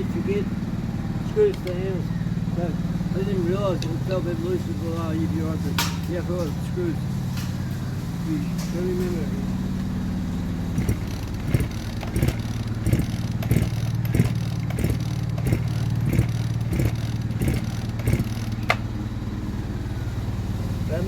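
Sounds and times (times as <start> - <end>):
steady low hum: 0.0 - 21.0
chainsaw recoil starter pulls: 1.2 - 2.0, 10.7 - 18.9.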